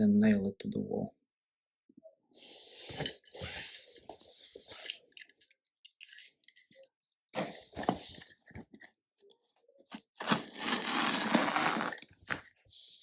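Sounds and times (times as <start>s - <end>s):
underlay being cut and torn: 10.2s - 12.0s.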